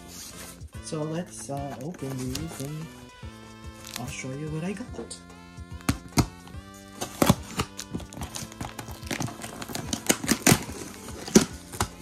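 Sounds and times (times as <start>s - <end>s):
background music: 0.0s - 12.0s
cardboard box ripping: 5.8s - 12.0s.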